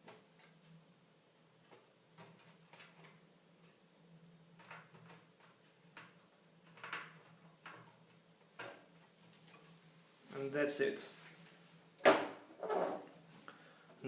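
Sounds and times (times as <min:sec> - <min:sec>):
small clicks and knocks: 0:01.6 - 0:03.8, 0:04.5 - 0:09.7.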